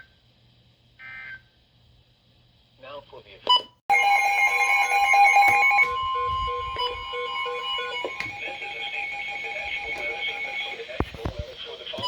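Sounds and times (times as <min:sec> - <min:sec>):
electronic alarm tones: 0:03.9 - 0:10.8.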